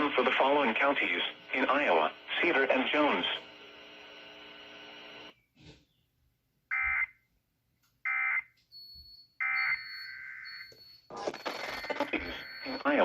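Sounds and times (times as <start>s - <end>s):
warbling digital data bursts: 11.1s - 13.0s.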